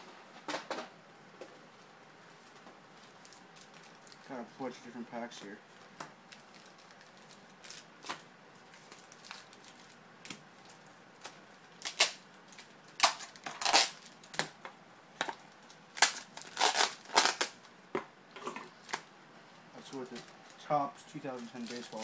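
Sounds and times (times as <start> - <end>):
wrappers crinkling and rustling: 2.3 - 14.4, 15.6 - 17.7, 19.8 - 22.0.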